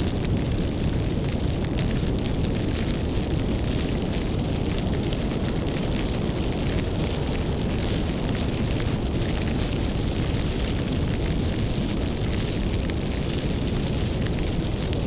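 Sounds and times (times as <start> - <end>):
fire crackling and rumbling: 0.0 - 15.0.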